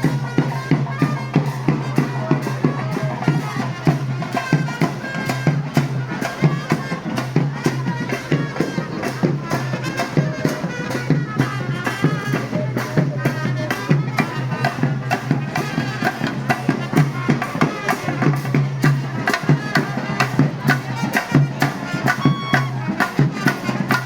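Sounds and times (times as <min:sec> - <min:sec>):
drums beating quickly: 0:00.0 - 0:24.0
reedy wind instrument melody: 0:00.0 - 0:24.0.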